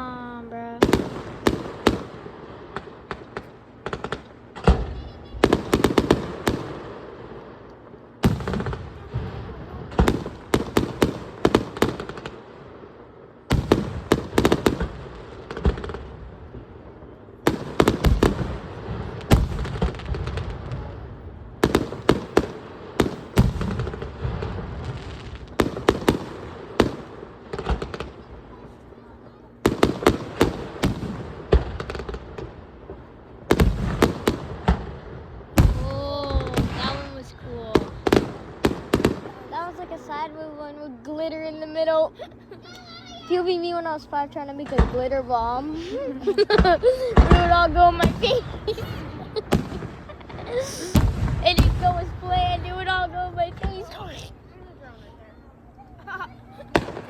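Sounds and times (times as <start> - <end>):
fireworks bangs and crackles: 0.0 - 40.5, 43.0 - 54.5, 55.5 - 57.0
low fireworks booms: 0.0 - 57.0.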